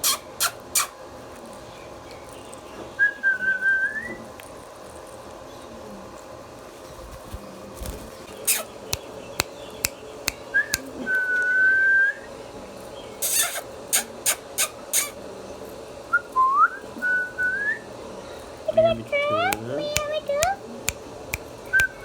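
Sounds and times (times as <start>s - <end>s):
parrot harsh calls: 0.0s - 1.0s, 8.3s - 9.0s, 13.2s - 15.3s
parrot whistling: 0.0s - 1.0s, 8.5s - 9.0s, 13.2s - 15.2s, 21.7s - 22.0s
parrot clicking: 8.4s - 11.0s, 19.2s - 22.0s.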